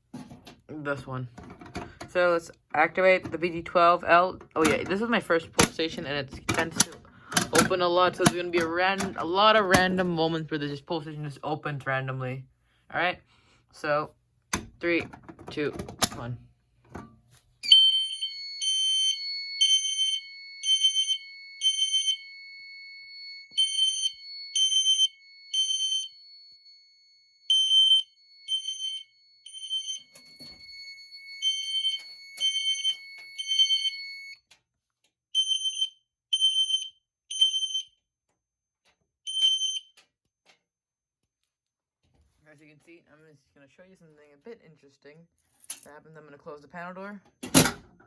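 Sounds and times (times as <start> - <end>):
fire alarm horn beeps: 17.6 - 26.5, 27.4 - 34.4, 35.4 - 37.9, 39.3 - 39.9.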